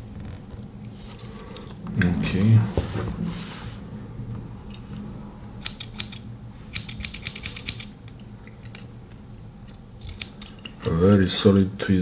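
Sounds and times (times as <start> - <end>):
scissors clicking: 5.6 - 8.9, 10.0 - 10.8.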